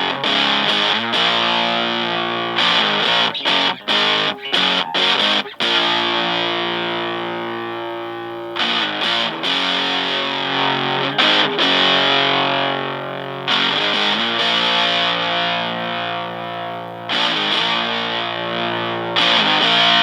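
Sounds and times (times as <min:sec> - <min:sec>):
distorted electric guitar chords: 0:00.0 - 0:20.0.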